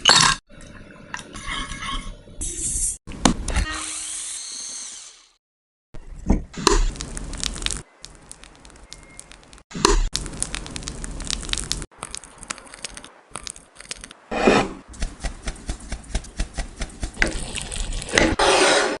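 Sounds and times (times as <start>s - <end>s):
food and utensils handled: 11.9s - 14.2s.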